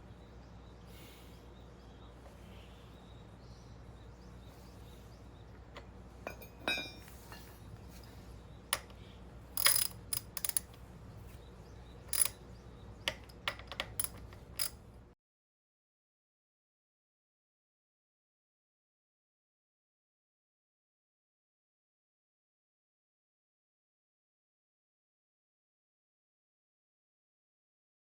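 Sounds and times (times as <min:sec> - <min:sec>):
metal tools clinking: 0:06.2 - 0:08.2, 0:09.6 - 0:10.8, 0:12.1 - 0:12.4, 0:13.1 - 0:14.8.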